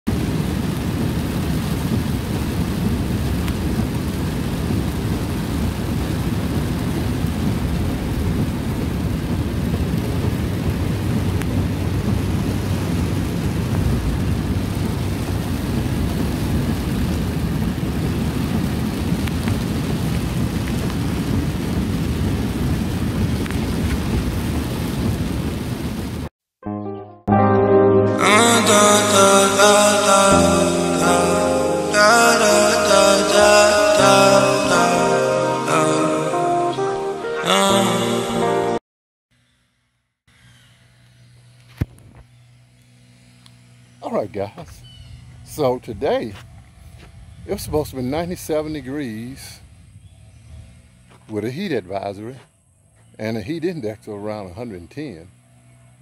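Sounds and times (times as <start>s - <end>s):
deep rumble: 0.1s - 26.3s, 43.4s - 53.2s
heavy rain hissing: 0.1s - 26.3s, 28.3s - 38.6s, 44.0s - 52.4s
raindrop ticks: 0.7s - 26.0s.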